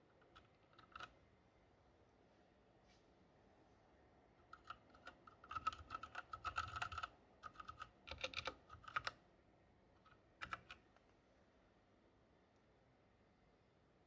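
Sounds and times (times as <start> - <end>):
mechanical keyboard key clicks: 4.5 - 9.1, 10.4 - 10.8.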